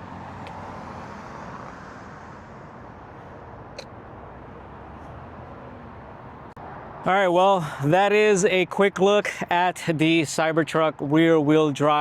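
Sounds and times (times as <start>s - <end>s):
road traffic noise: 0.0s - 12.0s.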